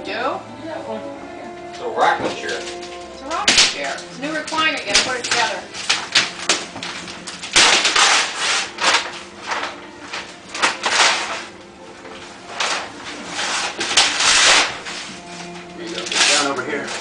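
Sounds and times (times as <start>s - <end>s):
wrapping paper tearing: 2.2s - 11.6s, 12.2s - 17.0s
paper rubbing: 4.2s - 11.6s, 12.2s - 17.0s.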